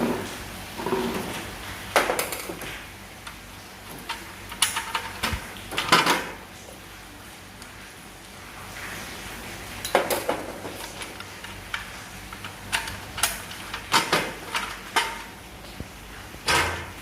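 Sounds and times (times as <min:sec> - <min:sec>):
hard objects clicking and clattering: 0:02.0 - 0:06.4, 0:09.8 - 0:15.4.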